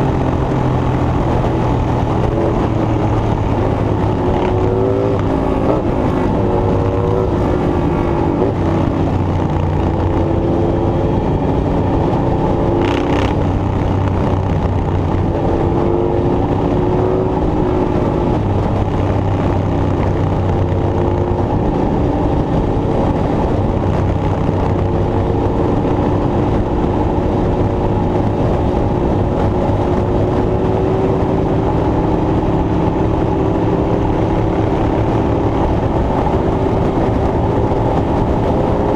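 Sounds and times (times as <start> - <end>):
engine running under load: 0.0 - 20.0.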